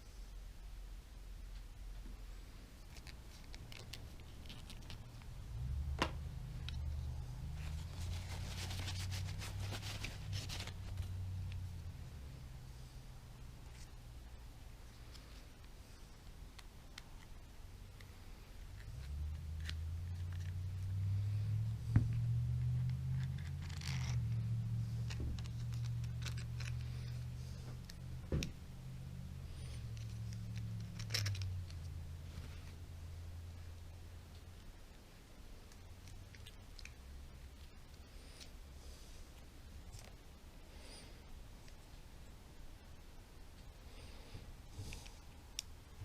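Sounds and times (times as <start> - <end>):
steady low hum: 0.0 - 46.0
scratching and rustling of tools: 2.8 - 11.8, 18.0 - 28.7, 29.4 - 32.8.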